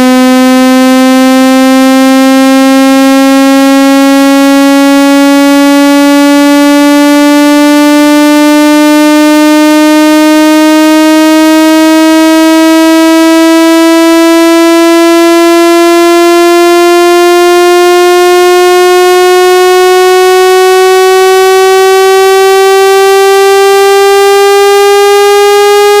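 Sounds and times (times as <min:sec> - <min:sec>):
rising synthesized buzzing tone: 0:00.0 - 0:26.0.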